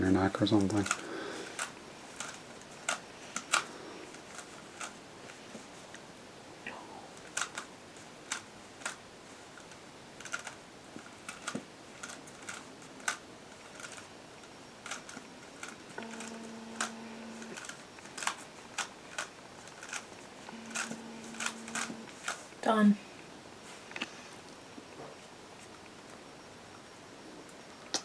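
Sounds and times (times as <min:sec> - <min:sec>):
plastic puzzle cube clicking: 0:00.6 - 0:05.0, 0:07.2 - 0:07.7, 0:08.3 - 0:09.0, 0:09.6 - 0:14.1, 0:14.8 - 0:20.1, 0:20.7 - 0:22.4.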